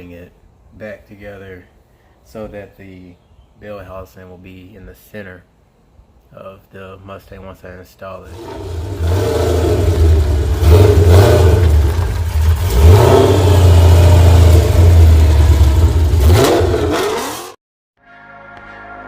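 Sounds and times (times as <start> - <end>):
car engine revving: 8.3 - 17.6.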